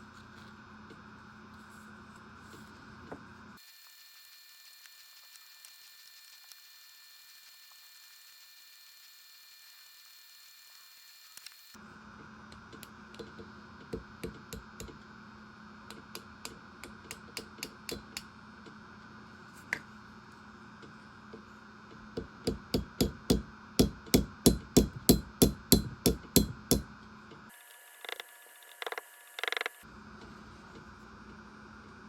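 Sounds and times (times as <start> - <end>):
hammer tapping: 13.2 - 15.0, 15.9 - 18.3, 22.2 - 26.9.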